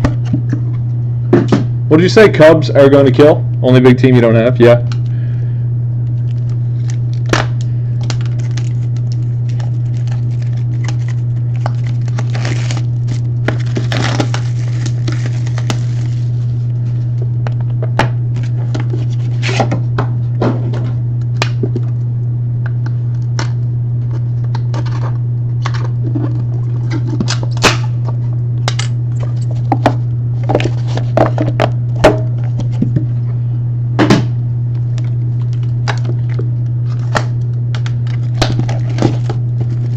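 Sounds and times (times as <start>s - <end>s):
low hum: 0.0s - 39.9s
cardboard packaging being torn: 6.2s - 16.6s, 35.4s - 39.9s.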